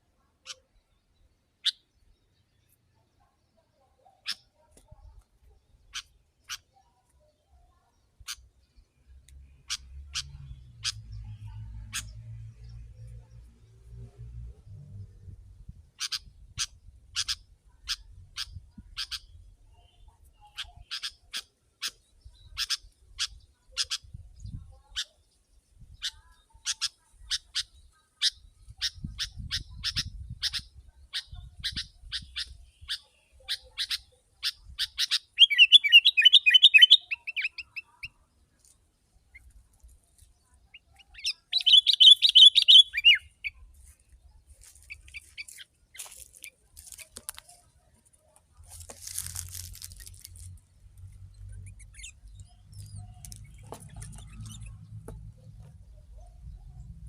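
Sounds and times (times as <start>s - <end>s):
bird chattering song: 0.4s - 13.8s, 15.8s - 48.0s, 48.8s - 57.0s
bird calling sharp notes: 33.8s - 38.1s, 40.8s - 43.6s.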